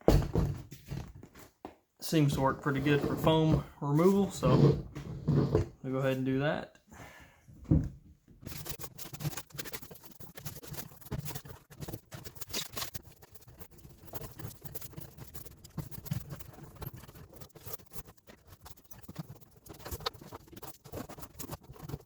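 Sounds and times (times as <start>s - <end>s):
bread knife sawing foam: 2.2s - 5.6s, 8.5s - 21.8s.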